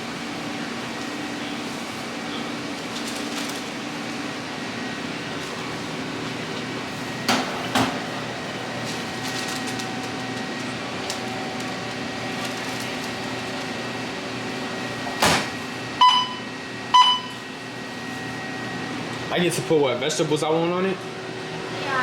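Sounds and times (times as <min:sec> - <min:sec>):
appliances humming: 0:00.0 - 0:22.0
short electronic beep: 0:16.0 - 0:17.4.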